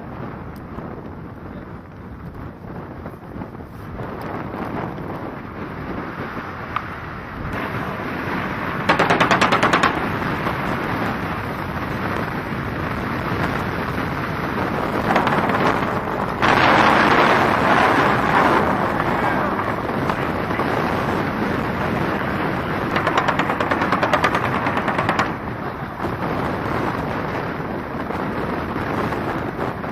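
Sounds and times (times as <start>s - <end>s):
steady wind: 0.0s - 29.9s
engine noise: 6.2s - 29.9s
automatic machine-gun fire: 7.6s - 11.2s, 14.8s - 25.8s.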